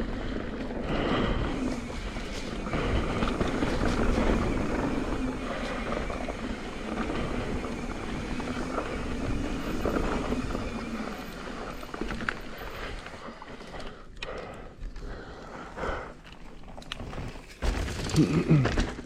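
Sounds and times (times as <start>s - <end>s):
tyre and wind noise: 0.0s - 13.5s
bike knocks and rattles: 17.0s - 19.0s.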